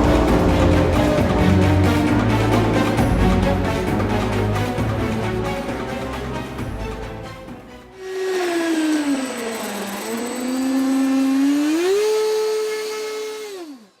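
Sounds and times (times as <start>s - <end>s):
electric ducted fan whining: 8.0s - 13.7s.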